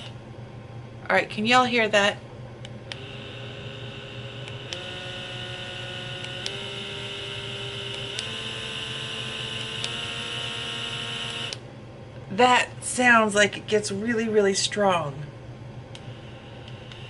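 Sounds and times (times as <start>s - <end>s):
small motor hum and whine: 0.0s - 0.3s, 2.6s - 11.7s, 15.8s - 17.0s.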